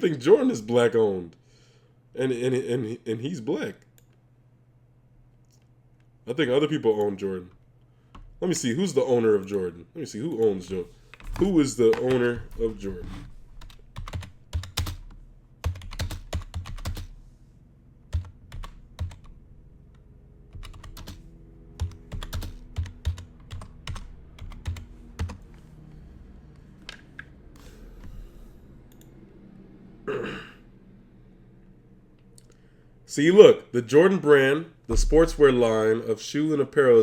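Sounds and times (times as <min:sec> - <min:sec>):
typing on a keyboard: 0:13.6 - 0:17.1, 0:18.1 - 0:19.3, 0:20.6 - 0:21.2, 0:21.8 - 0:25.4.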